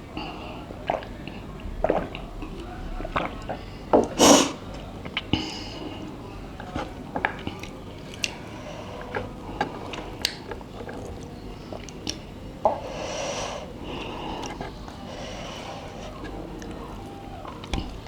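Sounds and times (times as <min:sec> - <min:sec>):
breathy sound: 0:00.2 - 0:06.1
person chewing noodles: 0:06.8 - 0:13.0.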